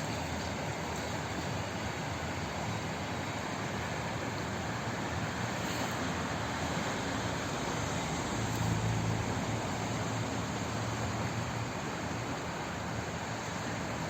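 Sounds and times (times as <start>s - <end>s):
flowing water: 0.0s - 14.0s.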